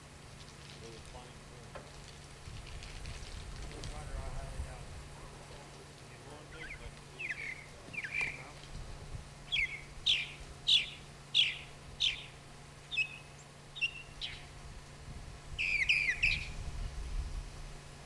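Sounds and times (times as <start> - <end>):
songbird whistling calls: 6.5 - 8.6, 9.4 - 14.6, 15.6 - 17.4.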